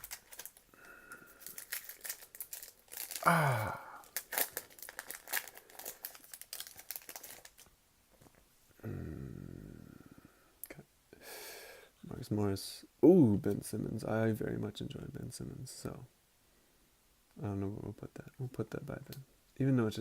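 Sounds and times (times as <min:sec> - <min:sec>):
plastic wrapper torn and crinkled: 0:00.0 - 0:07.7.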